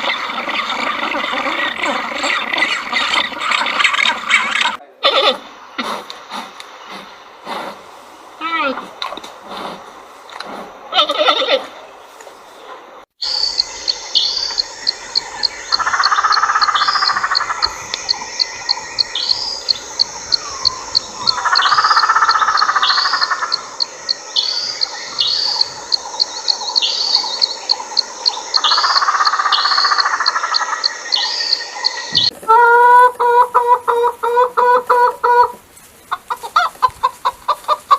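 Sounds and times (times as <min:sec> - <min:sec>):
high animal chirps: 0:13.2 - 0:32.3
low buzzing animal call: 0:13.3 - 0:33.0.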